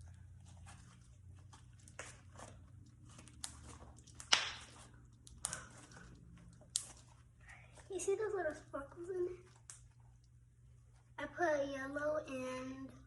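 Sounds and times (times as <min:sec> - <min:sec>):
slime snapping: 0:03.3 - 0:05.7, 0:06.6 - 0:07.0.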